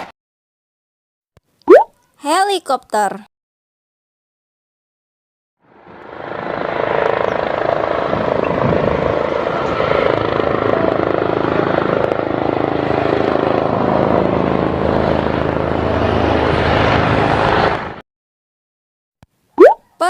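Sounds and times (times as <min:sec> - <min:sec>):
helicopter turbine and rotor drone: 0:05.6 - 0:18.0.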